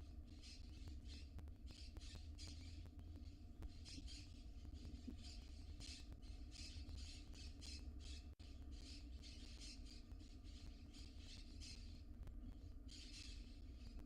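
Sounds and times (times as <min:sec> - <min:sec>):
owl nestlings hissing calls: 0:12.9 - 0:13.6.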